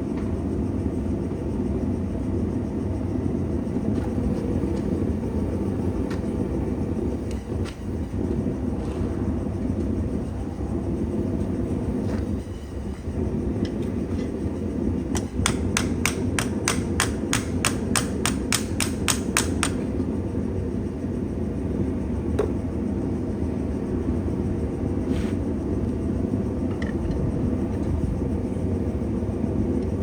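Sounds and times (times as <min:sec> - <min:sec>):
hammer striking steel on anvil: 0:15.2 - 0:19.8.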